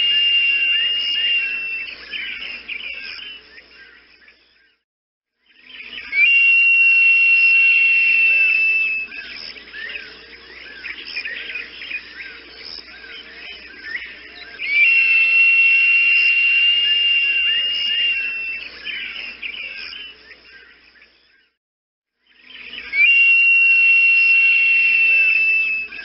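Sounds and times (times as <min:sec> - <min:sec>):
long high whistles: 0:00.0 - 0:02.1, 0:05.8 - 0:09.2, 0:14.6 - 0:19.4, 0:22.4 - 0:26.0
small birds chirping: 0:00.0 - 0:04.8, 0:05.4 - 0:21.6, 0:22.2 - 0:26.0.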